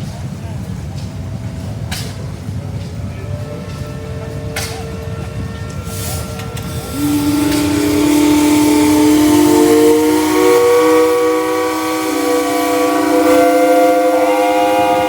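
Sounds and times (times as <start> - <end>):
steam engine whistles blowing: 3.1 - 15.0.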